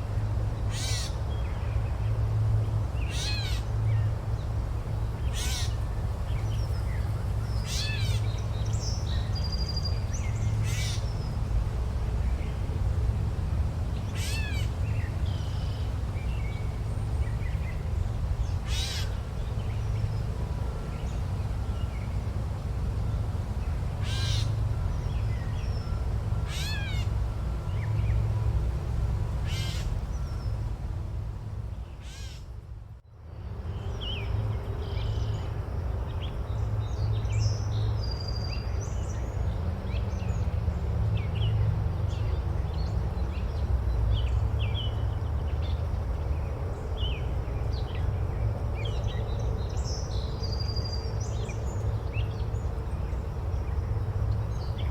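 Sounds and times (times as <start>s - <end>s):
birds cawing: 0.7s - 1.2s, 3.1s - 3.7s, 5.2s - 5.8s, 10.6s - 11.0s, 18.6s - 19.2s, 24.0s - 24.6s, 26.3s - 27.2s, 29.4s - 30.0s, 32.0s - 32.5s.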